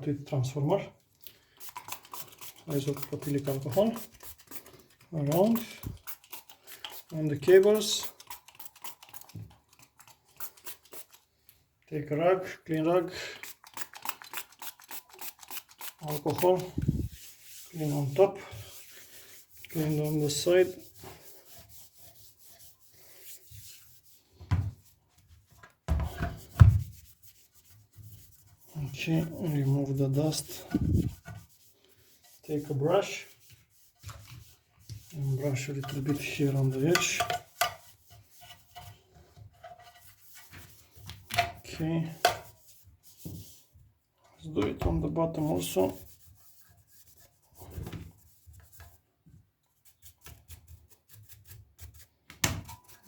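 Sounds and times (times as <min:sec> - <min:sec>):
rag rubbing: 0:01.6 - 0:11.3, 0:13.4 - 0:25.1, 0:26.0 - 0:43.7, 0:44.8 - 0:49.1
small scrapes and ticks: 0:01.6 - 0:11.6, 0:13.4 - 0:17.8.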